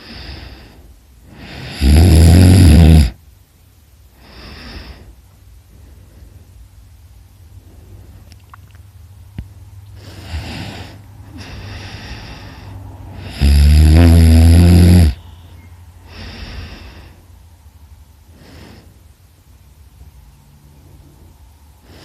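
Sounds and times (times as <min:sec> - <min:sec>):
person snoring: 0:00.0 - 0:03.2, 0:10.0 - 0:15.2.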